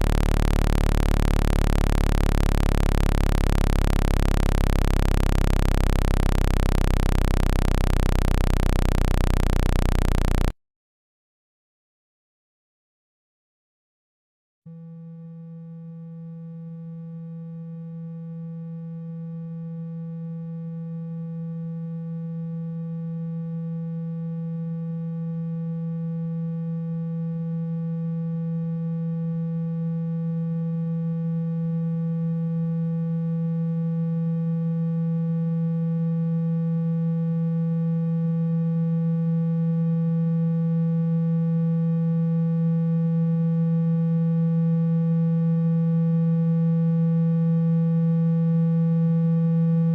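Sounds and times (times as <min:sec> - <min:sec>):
low electronic tone: 0:00.0 - 0:10.6.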